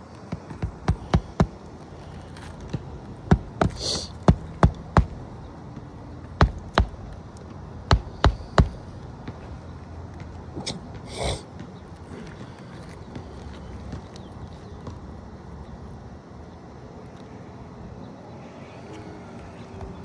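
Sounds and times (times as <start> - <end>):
hammer striking nails: 0.3 - 2.7, 3.3 - 5.4, 6.2 - 7.2, 7.9 - 9.5
scraping hiss: 3.6 - 4.4.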